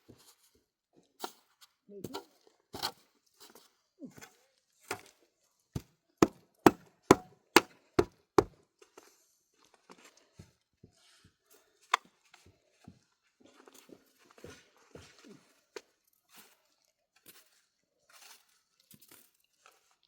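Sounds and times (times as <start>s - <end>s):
sharp chopping strikes: 6.2s - 7.7s.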